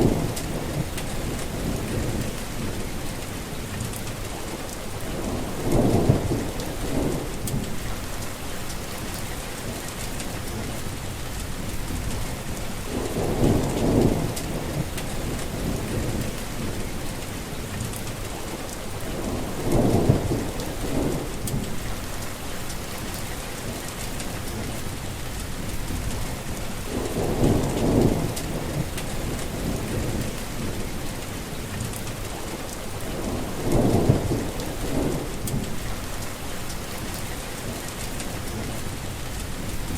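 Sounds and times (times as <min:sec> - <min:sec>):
thunder rolling: 0:00.0 - 0:03.1, 0:05.0 - 0:08.2, 0:10.2 - 0:17.1, 0:19.0 - 0:22.2, 0:25.6 - 0:31.3, 0:32.1 - 0:39.9
heavy rain: 0:00.0 - 0:39.9.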